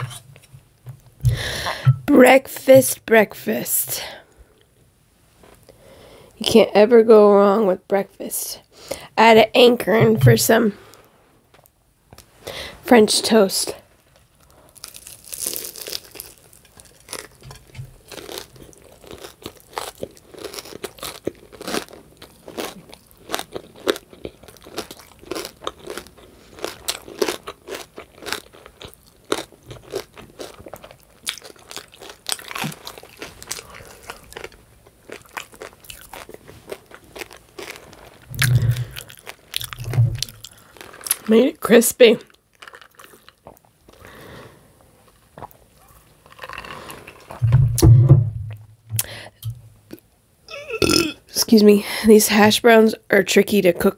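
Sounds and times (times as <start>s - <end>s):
chewing and crunching: 14.0s - 41.5s, 42.2s - 47.4s.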